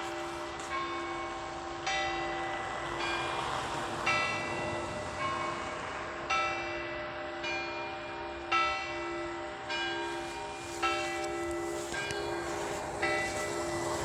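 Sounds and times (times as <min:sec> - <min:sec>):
small church bells struck: 0:00.0 - 0:14.0
deep bell humming: 0:08.5 - 0:14.0.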